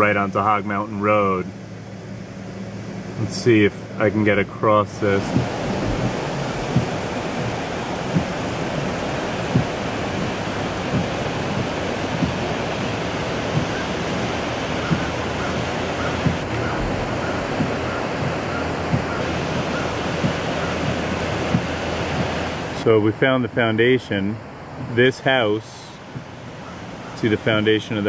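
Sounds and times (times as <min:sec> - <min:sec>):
car interior road noise: 0:00.0 - 0:28.0
soft low thump: 0:05.2 - 0:08.9, 0:09.5 - 0:09.8, 0:10.8 - 0:12.6, 0:14.8 - 0:15.2, 0:16.2 - 0:22.4.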